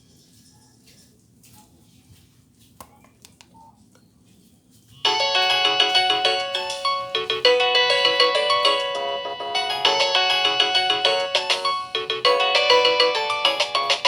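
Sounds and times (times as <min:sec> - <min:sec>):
polyphonic phone ringtone: 0:05.0 - 0:14.0.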